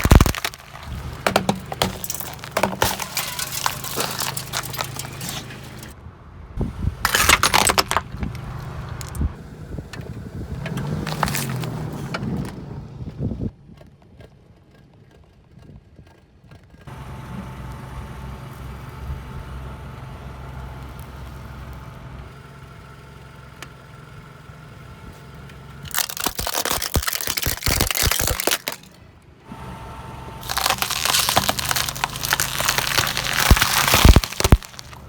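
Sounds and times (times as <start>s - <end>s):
tyres crushing crunchy objects: 0.0s - 6.0s, 7.0s - 9.2s, 10.8s - 12.1s, 25.9s - 29.0s, 30.4s - 35.0s
car engine low hum: 0.4s - 26.0s, 29.0s - 35.0s.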